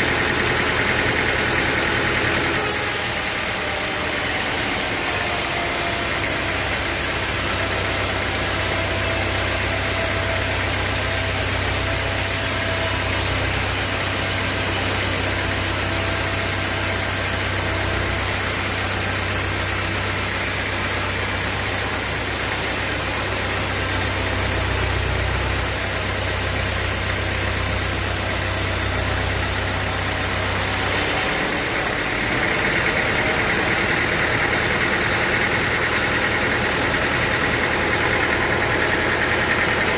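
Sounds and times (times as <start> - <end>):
machinery high whine: 0.0 - 39.9
sawmill machinery engine drone: 0.0 - 39.9.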